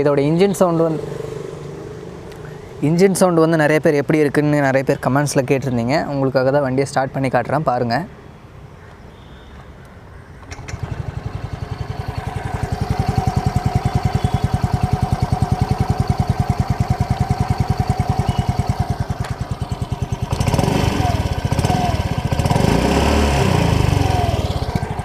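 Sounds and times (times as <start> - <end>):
scooter engine starting and idling: 10.4 - 25.0.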